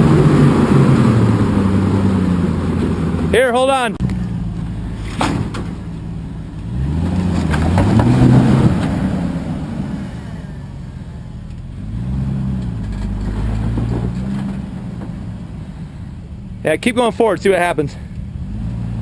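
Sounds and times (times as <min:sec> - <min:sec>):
engine revving: 0:00.0 - 0:10.6, 0:11.7 - 0:15.9, 0:17.8 - 0:19.0.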